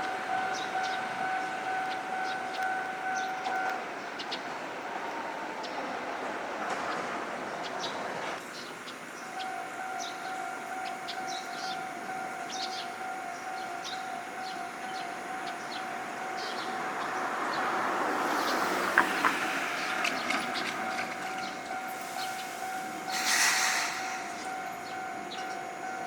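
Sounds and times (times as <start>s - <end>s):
level crossing warning tone: 0.0s - 3.8s, 9.3s - 18.3s, 19.4s - 26.0s
tram rumble: 0.0s - 26.0s.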